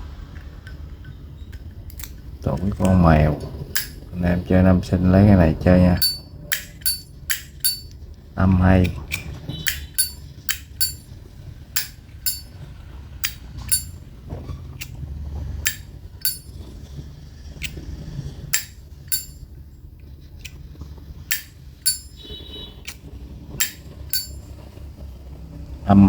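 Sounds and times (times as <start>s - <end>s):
lighter lid clinking open: 3.8s - 4.0s, 6.0s - 8.0s, 9.1s - 11.0s, 15.6s - 16.5s, 23.6s - 24.4s
lighter lid snapping shut: 3.8s - 4.0s, 9.1s - 9.9s.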